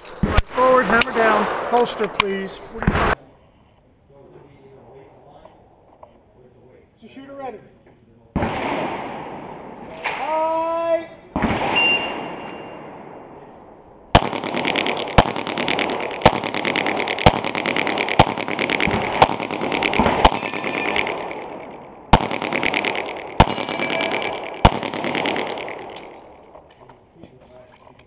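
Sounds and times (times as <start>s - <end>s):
steady rushing noise: 12.8s - 26.7s
pistol shots: 14.1s - 26.6s.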